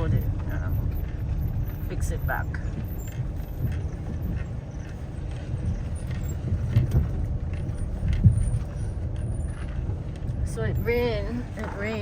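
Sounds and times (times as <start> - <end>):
car engine and road noise: 0.0 - 12.0.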